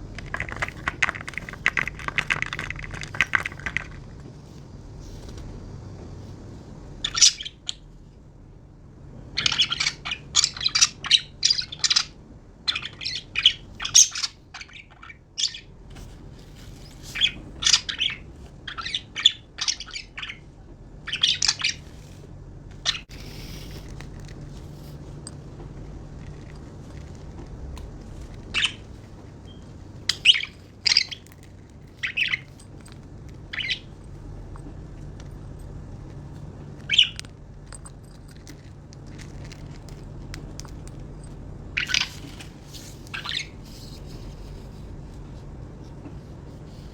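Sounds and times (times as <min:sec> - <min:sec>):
low steady hum: 0:00.0 - 0:46.9
budgerigars chirping: 0:07.0 - 0:07.8, 0:09.4 - 0:15.7, 0:17.1 - 0:20.5, 0:21.1 - 0:22.1, 0:22.8 - 0:23.8, 0:28.4 - 0:32.6, 0:33.5 - 0:34.0, 0:36.8 - 0:37.2, 0:41.8 - 0:42.3, 0:43.1 - 0:43.6.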